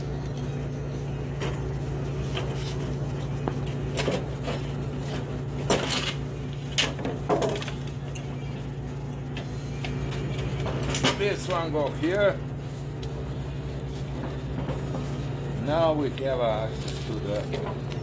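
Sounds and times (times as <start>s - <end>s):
steady low hum: 0.0s - 18.0s
parts and tools clattering: 3.6s - 8.3s, 9.9s - 11.8s.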